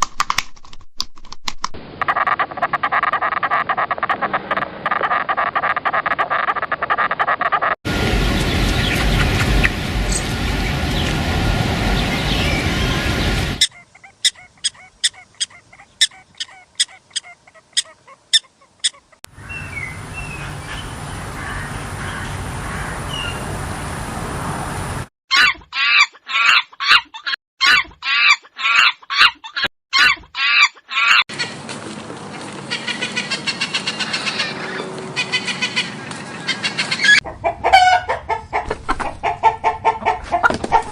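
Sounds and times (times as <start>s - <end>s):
fowl calling rapidly: 2.0s - 7.8s, 13.6s - 23.4s, 25.3s - 31.6s, 32.7s - 40.8s
loud animal noise: 2.0s - 7.8s, 13.6s - 23.4s, 32.7s - 38.4s
animal chirps: 13.6s - 20.8s
sharp animal clicks: 14.2s - 19.0s.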